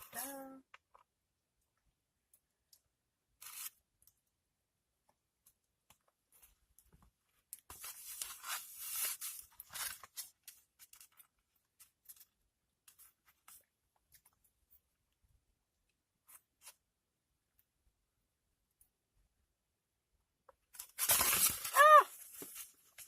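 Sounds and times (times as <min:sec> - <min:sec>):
rustling crinkling handling noise: 0:06.3 - 0:14.5, 0:20.7 - 0:23.0.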